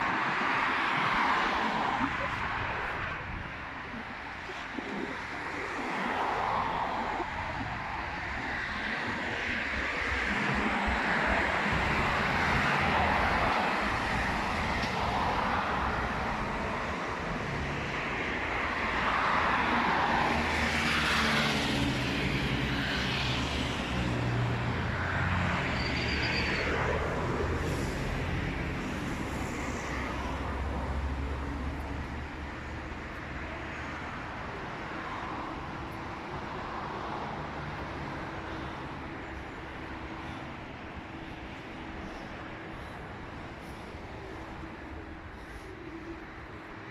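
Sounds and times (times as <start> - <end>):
vehicles passing: 0.0 - 46.9
heavy engine humming low: 23.6 - 46.9.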